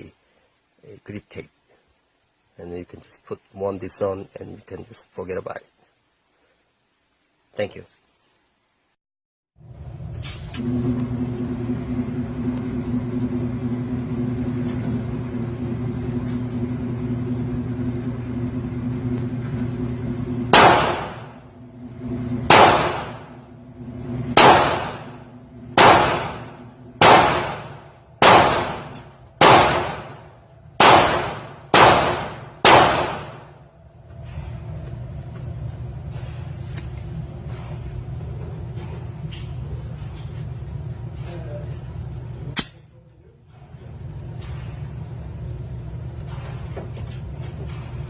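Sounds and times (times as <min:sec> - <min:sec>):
steady low hum: 0:09.6 - 0:48.0
pistol shots with echo: 0:20.5 - 0:21.4, 0:22.5 - 0:23.3, 0:24.4 - 0:25.2, 0:25.8 - 0:30.2, 0:30.8 - 0:33.5.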